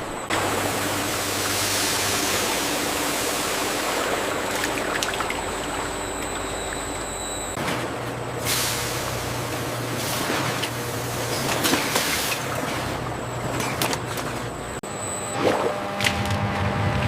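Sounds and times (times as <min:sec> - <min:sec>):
flowing water rushing: 0:00.0 - 0:07.6.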